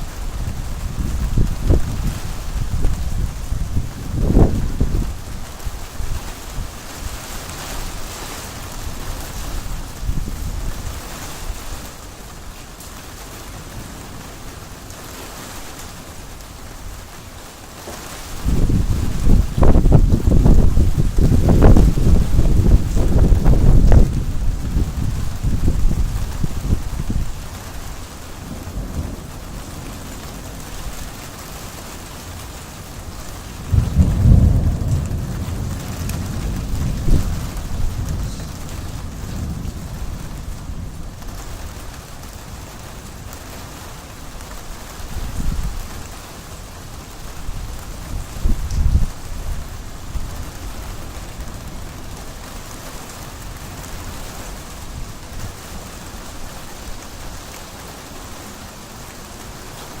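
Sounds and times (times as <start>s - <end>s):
thunder rumble: 0.0s - 12.0s, 18.0s - 43.0s
steady rain: 0.0s - 60.0s.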